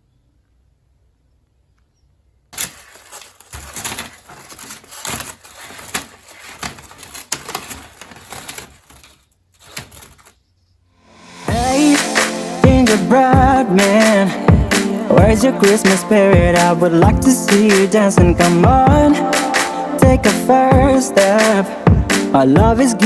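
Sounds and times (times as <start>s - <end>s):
rustling with light knocks: 2.6s - 10.6s.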